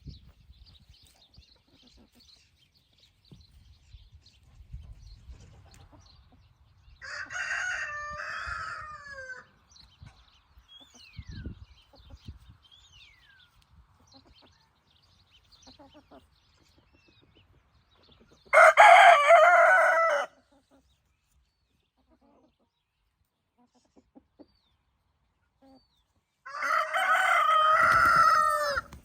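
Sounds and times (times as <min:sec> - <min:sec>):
rooster crowing: 0:07.0 - 0:09.5, 0:18.5 - 0:20.4, 0:26.5 - 0:28.9.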